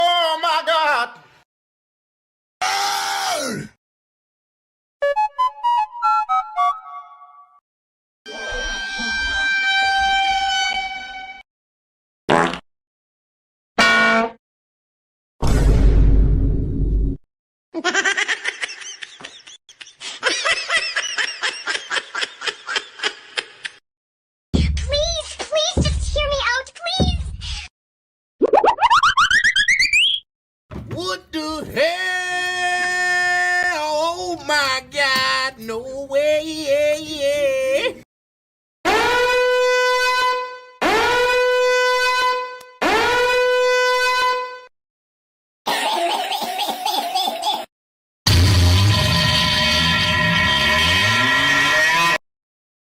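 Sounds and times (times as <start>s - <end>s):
high-pitched snickering laughter: 45.7s - 47.7s
buzzy horn ringtone: 48.3s - 52.2s.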